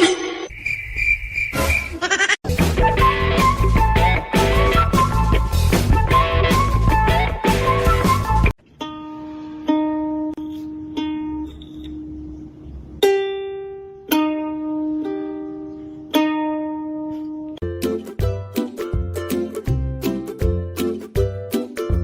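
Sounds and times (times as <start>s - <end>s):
loud rock music: 2.5s - 8.5s
plucked string melody: 2.5s - 22.0s.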